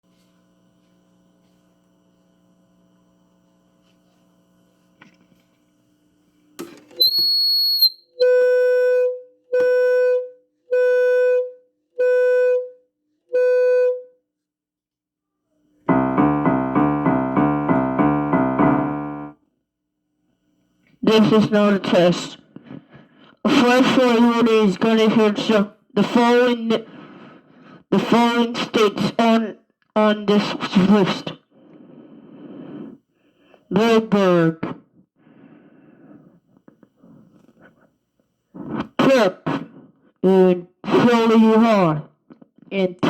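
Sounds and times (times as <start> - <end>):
fast repeated keyboard chords: 15.9 - 19.4.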